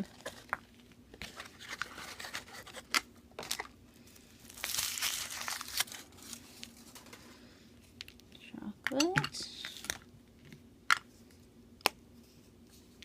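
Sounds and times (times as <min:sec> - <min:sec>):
wrapper crinkling and tearing: 0:04.4 - 0:07.1.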